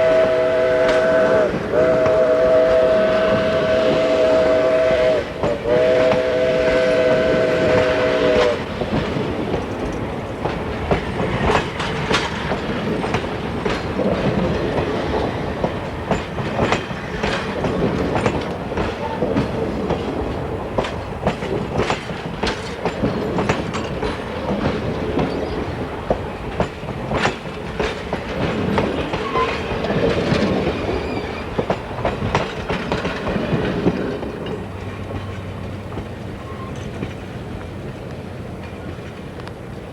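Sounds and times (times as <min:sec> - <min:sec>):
steam whistle chord: 0:00.0 - 0:08.6
train wheels clacking over rail joints: 0:00.0 - 0:39.9.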